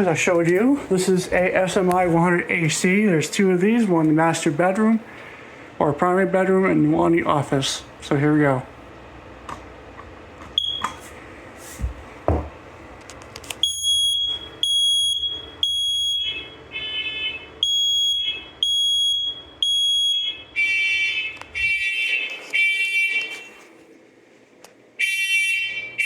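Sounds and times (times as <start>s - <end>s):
lower-toned alarms beeping: 10.6s - 10.9s, 13.6s - 23.3s
smoke alarm beeping: 10.6s - 11.1s, 13.6s - 23.6s.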